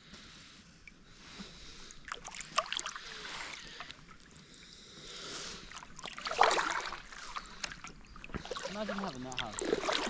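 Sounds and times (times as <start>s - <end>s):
paddle splashing in water: 2.0s - 4.2s, 5.7s - 10.0s
water dripping: 5.7s - 10.0s.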